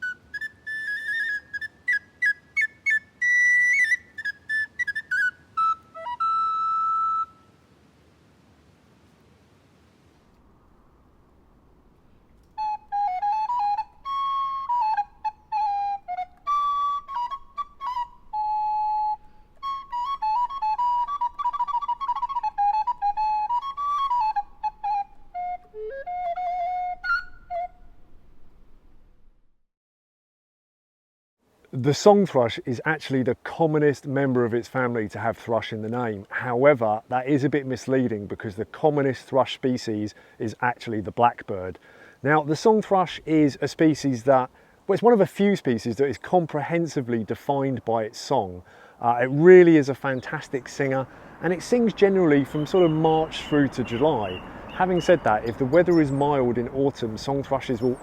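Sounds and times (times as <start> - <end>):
recorder playing trills: 0.0 - 7.6, 12.6 - 27.9, 51.6 - 58.0.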